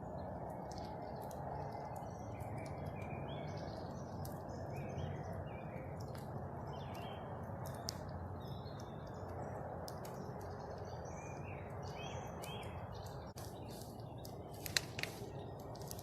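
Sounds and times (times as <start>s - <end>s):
small birds chirping: 0.0s - 16.0s
sharp clicks: 14.2s - 16.0s.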